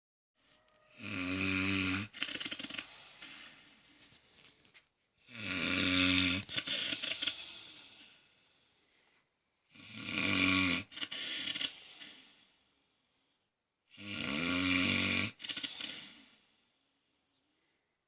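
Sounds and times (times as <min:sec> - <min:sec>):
person snoring: 0:00.9 - 0:03.6, 0:05.3 - 0:08.1, 0:09.7 - 0:12.3, 0:13.9 - 0:16.5.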